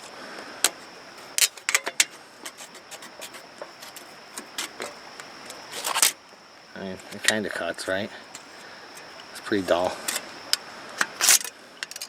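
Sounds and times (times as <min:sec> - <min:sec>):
aluminum foil crinkling: 0:00.6 - 0:06.2.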